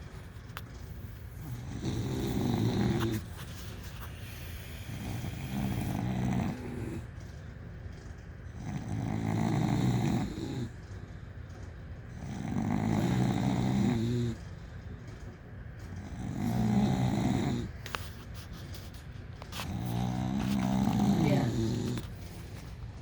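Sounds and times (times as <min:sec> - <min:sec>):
dogs snoring loudly: 0:00.7 - 0:14.8, 0:15.8 - 0:18.1, 0:19.4 - 0:22.8
quiet breathing: 0:00.8 - 0:07.2.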